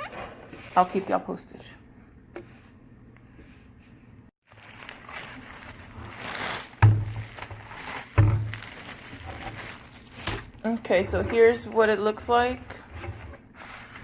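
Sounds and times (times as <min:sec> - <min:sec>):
packaging rustling: 0:04.4 - 0:10.7.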